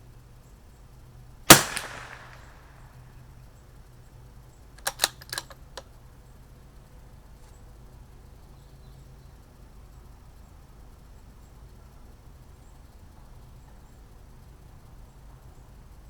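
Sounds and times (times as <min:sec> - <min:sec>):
rifle bolt clicking: 0:01.5 - 0:02.4, 0:04.8 - 0:05.6
rifle shot: 0:01.5 - 0:02.7, 0:04.8 - 0:05.5.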